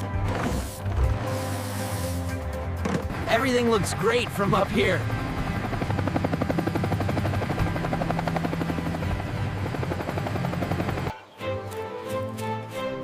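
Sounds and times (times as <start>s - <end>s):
background music: 0.0s - 13.0s
helicopter rotor chopping: 3.0s - 11.1s.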